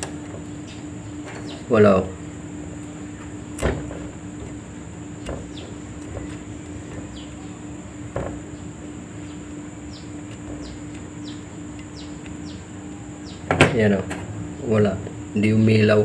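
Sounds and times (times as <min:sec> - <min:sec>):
steady low hum: 0:00.0 - 0:16.0
high falling chirps: 0:05.0 - 0:13.5.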